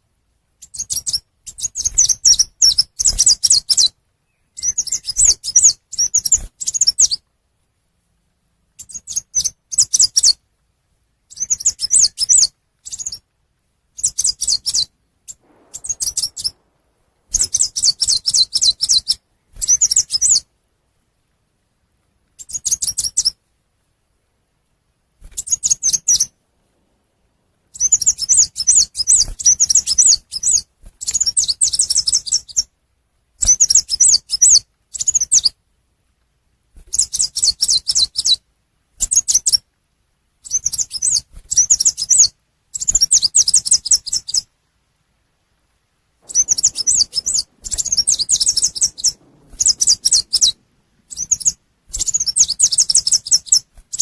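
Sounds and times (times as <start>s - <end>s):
songbird twittering chirps: 0.6s - 7.2s, 8.8s - 10.4s, 11.3s - 13.3s, 13.9s - 20.5s, 27.7s - 32.7s, 40.4s - 44.5s, 46.2s - 54.0s.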